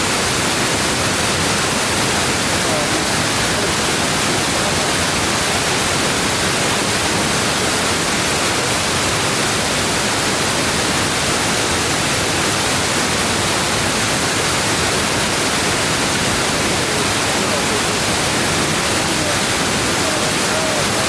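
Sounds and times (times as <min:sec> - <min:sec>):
waterfall rushing: 0:00.0 - 0:21.0.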